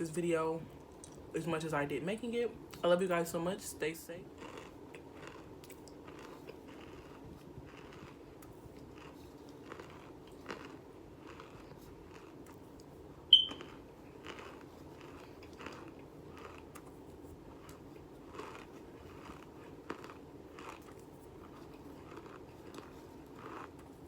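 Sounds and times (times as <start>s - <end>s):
chewing crunchy snack: 4.2s - 24.0s
sharp high ping: 13.3s - 13.6s.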